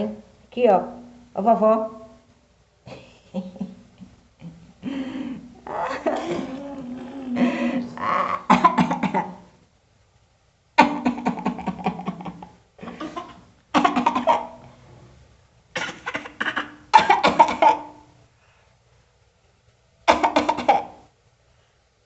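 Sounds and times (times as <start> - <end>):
person coughing: 4.9 - 9.4, 12.8 - 14.6, 15.8 - 18.0, 20.1 - 21.0.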